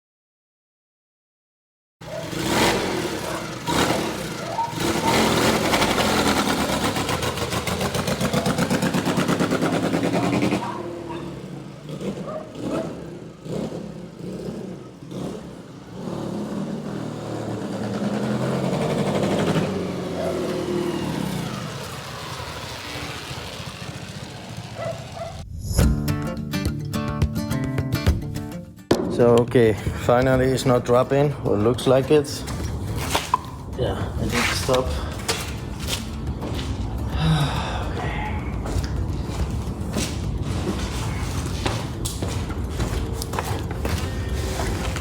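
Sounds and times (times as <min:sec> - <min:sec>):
motorcycle engine revving: 0:02.0 - 0:25.6, 0:30.5 - 0:45.0.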